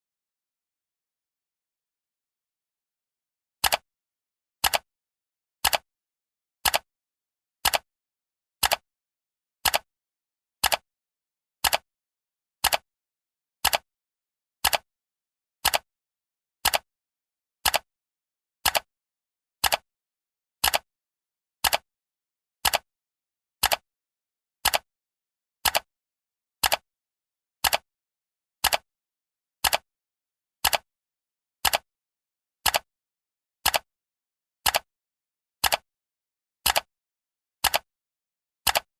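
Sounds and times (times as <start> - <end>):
clock ticking: 28.6 - 28.8, 35.6 - 35.8, 36.7 - 36.9, 37.6 - 37.9, 38.7 - 38.9.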